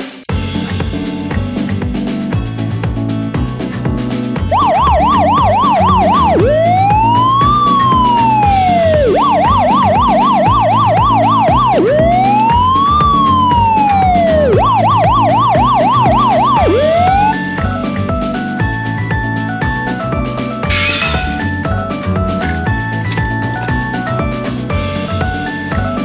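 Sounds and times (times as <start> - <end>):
background music: 0.3 - 26.0
emergency vehicle siren: 4.5 - 17.4.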